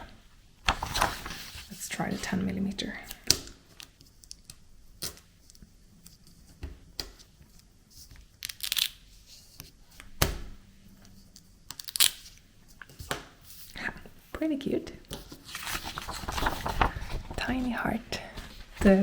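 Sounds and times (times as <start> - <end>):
tape ripping: 8.4 - 9.0, 11.7 - 12.3.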